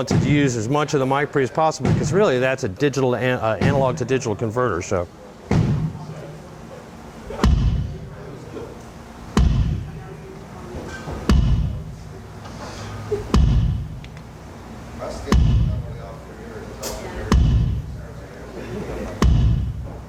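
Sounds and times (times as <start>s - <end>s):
kick drum thuds: 5.5s - 6.0s, 7.4s - 8.0s, 9.4s - 9.9s, 11.3s - 12.0s, 13.3s - 14.0s, 15.3s - 15.9s, 17.3s - 17.9s, 19.2s - 19.9s.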